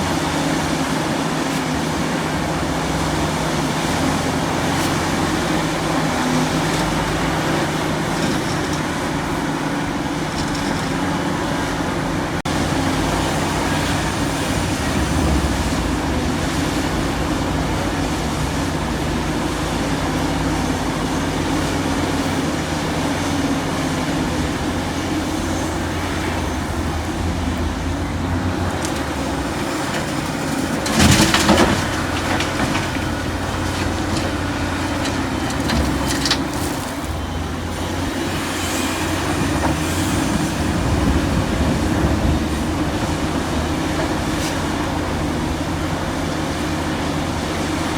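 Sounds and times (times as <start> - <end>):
excavator diesel engine running: 0.0 - 47.9.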